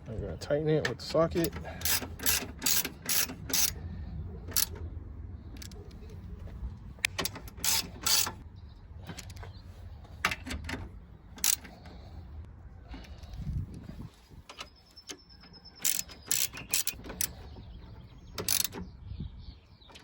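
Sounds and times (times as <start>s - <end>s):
socket ratchet clicking: 1.4s - 3.8s, 7.0s - 8.4s, 11.4s - 11.8s, 15.0s - 17.4s, 18.4s - 18.8s.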